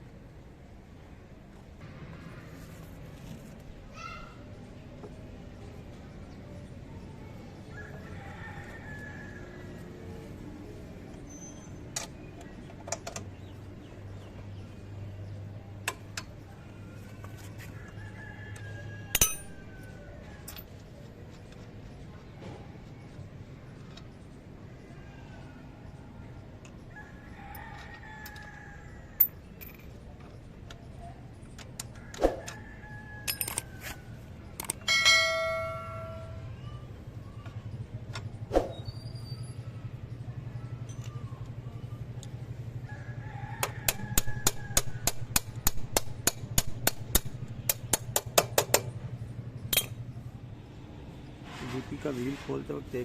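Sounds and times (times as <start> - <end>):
hand tools clinking on metal: 19.1 - 19.7, 33.2 - 33.8, 49.7 - 50.0
ringing metallic clang: 19.2 - 19.6, 34.8 - 36.5, 49.7 - 50.0.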